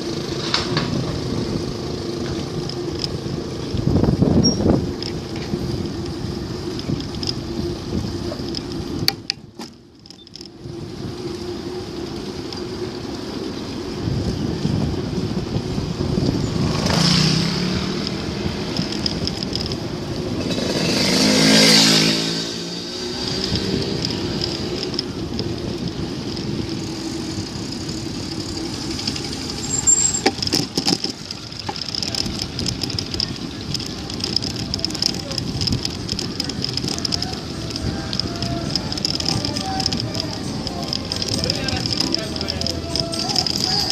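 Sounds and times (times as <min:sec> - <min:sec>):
wind noise on microphone: 0:00.0 - 0:09.7, 0:10.4 - 0:43.9
motor vehicle passing: 0:10.5 - 0:43.9
sharp clicks: 0:16.7 - 0:19.9, 0:27.2 - 0:43.9.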